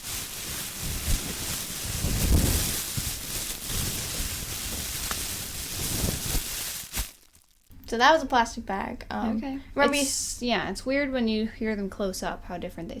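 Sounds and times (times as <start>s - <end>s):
plastic bag crinkling: 0.0s - 7.7s.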